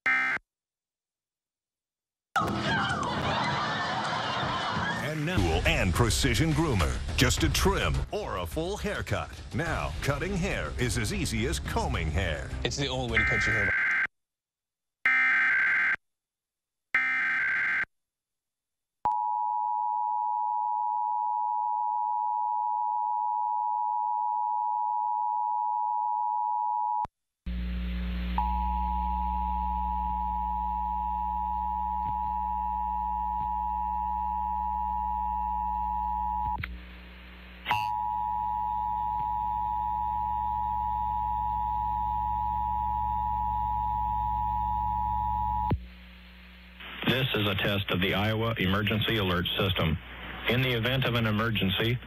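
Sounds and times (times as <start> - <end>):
low steady hum: 27.5 - 47.1.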